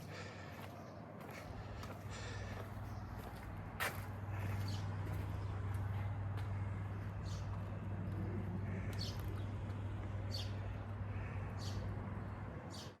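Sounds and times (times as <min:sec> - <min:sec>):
low mechanical hum: 0:00.0 - 0:13.0
bird chirping: 0:04.4 - 0:13.0.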